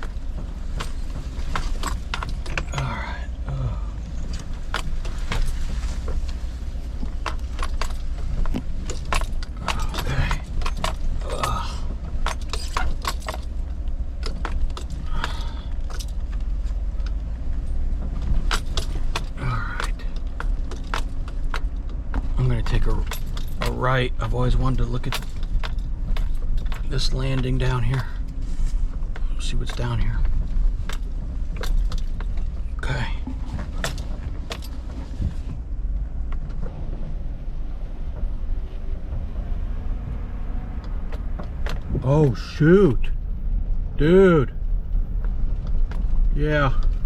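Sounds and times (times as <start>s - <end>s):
engine and road rumble: 0.0s - 47.0s.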